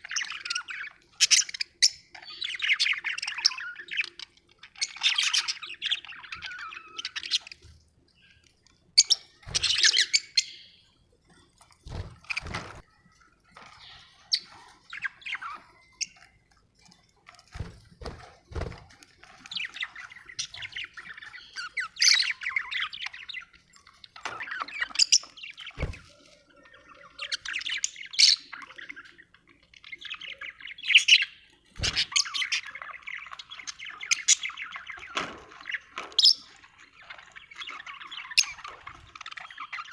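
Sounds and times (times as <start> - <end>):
budgerigars chirping and warbling: 0.0 - 10.8, 11.9 - 12.8, 13.5 - 39.9.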